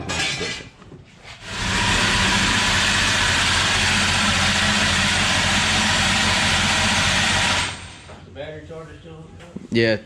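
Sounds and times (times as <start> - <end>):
engine running loudly: 1.4 - 8.1.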